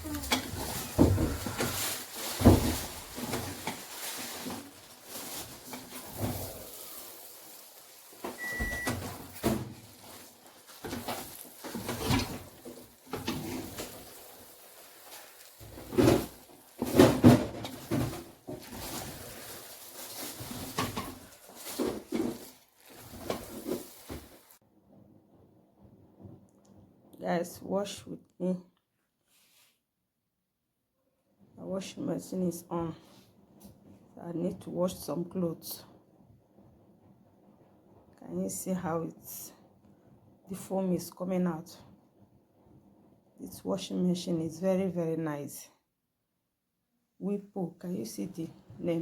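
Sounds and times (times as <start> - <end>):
household objects knocking and clattering: 0.0 - 3.9
short electronic beep: 8.4 - 8.9.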